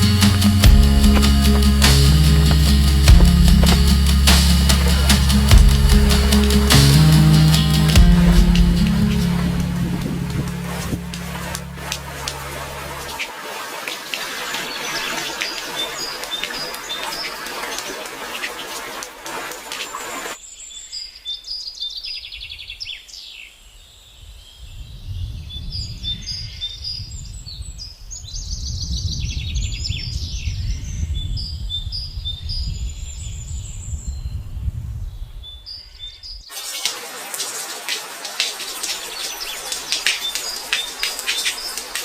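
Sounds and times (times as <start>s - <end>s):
low rumble: 0.0s - 13.2s
rain hiss: 0.0s - 20.4s, 36.5s - 42.0s.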